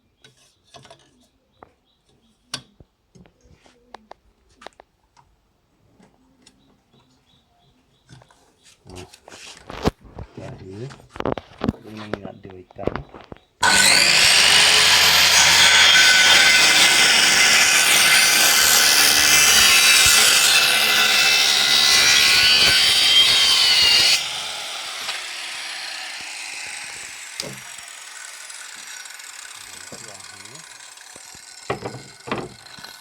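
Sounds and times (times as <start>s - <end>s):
circular saw whining: 13.6s - 33.0s.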